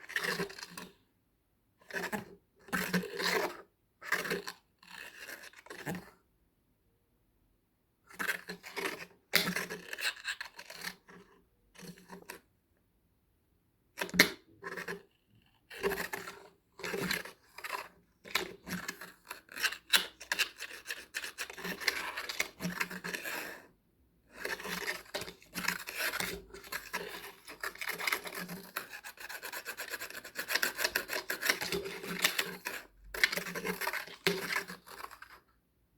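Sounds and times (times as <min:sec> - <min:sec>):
cat claws scratching: 0:15.8 - 0:23.6, 0:24.3 - 0:35.4.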